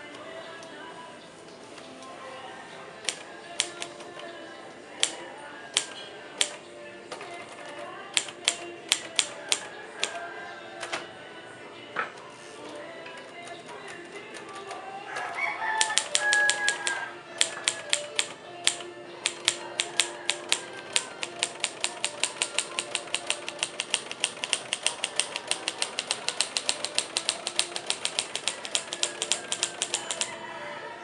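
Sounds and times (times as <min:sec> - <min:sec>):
manual typewriter clacking: 0:03.0 - 0:04.3, 0:05.0 - 0:06.6, 0:07.2 - 0:10.2, 0:13.2 - 0:14.9, 0:15.8 - 0:30.3.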